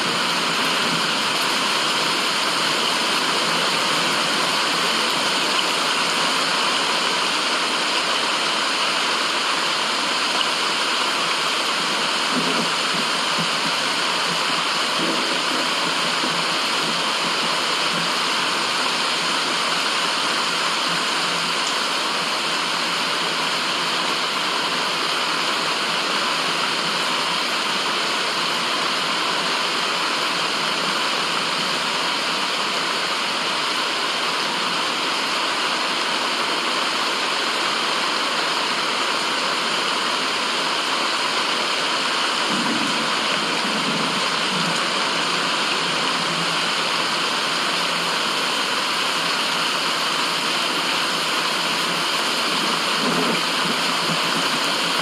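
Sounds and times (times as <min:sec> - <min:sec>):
steady rushing white noise hiss: 0:00.0 - 0:55.0.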